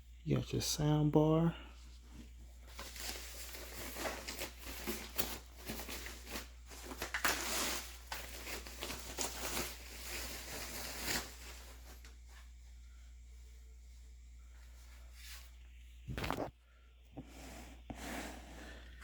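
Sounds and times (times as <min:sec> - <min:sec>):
packaging rustling and crinkling: 0:02.0 - 0:12.6.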